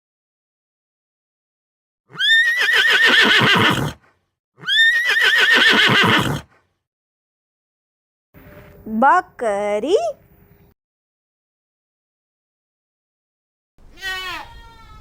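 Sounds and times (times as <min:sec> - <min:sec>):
horse whinnying: 0:02.1 - 0:06.6.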